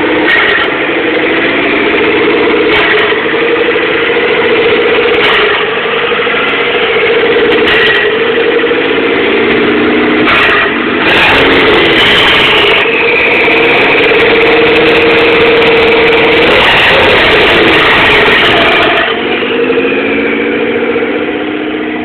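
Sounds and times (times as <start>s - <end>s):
car engine idling rough: 0.0s - 22.0s.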